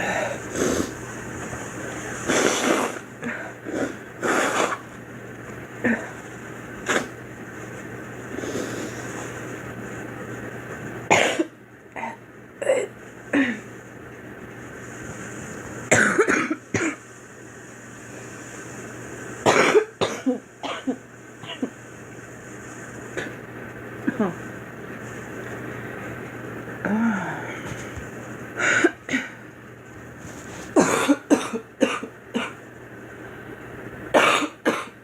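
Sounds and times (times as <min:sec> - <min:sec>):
steady low hum: 0:00.0 - 0:35.0
woman coughing: 0:11.1 - 0:13.6, 0:15.9 - 0:17.0, 0:19.5 - 0:21.7, 0:24.1 - 0:24.4, 0:28.6 - 0:29.4, 0:30.8 - 0:32.6, 0:34.2 - 0:35.0.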